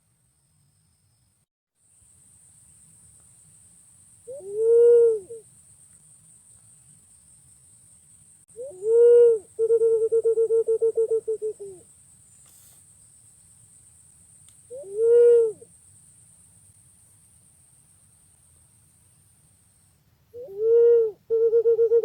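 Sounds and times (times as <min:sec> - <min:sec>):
pigeon whistling call: 0:20.4 - 0:22.0.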